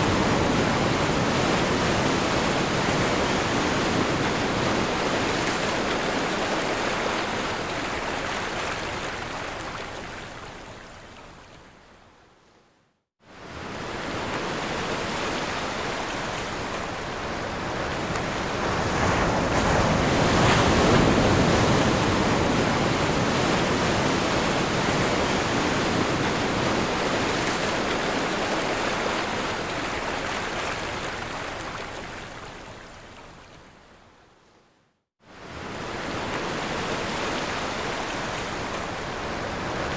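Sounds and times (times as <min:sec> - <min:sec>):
ocean surf breaking on shore: 0:00.0 - 0:10.2, 0:13.3 - 0:32.4, 0:35.3 - 0:39.9.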